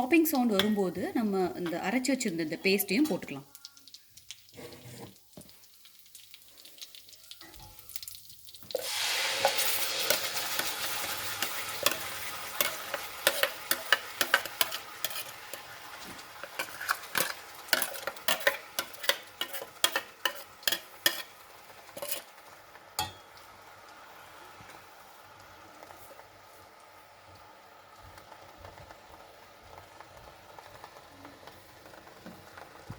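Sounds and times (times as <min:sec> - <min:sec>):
paste sizzling in a pan: 0:00.0 - 0:32.9
spices crackling in oil: 0:00.0 - 0:32.9
spoon clicking against a pan: 0:12.6 - 0:14.8.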